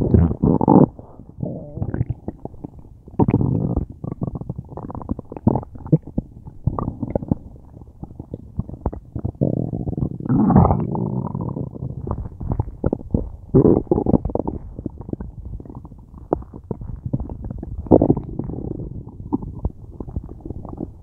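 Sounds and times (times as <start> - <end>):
stomach gurgling: 0.0 - 21.0.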